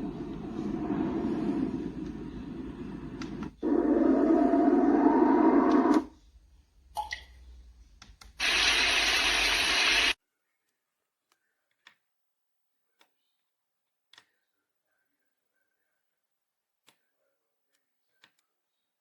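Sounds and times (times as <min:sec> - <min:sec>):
deep noisy sound: 0:00.0 - 0:06.1
hissing white noise: 0:08.4 - 0:10.2.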